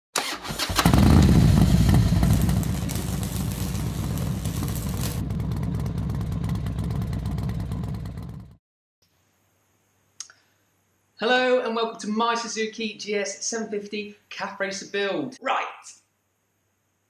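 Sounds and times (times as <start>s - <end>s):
motorcycle engine running: 0.6s - 8.6s.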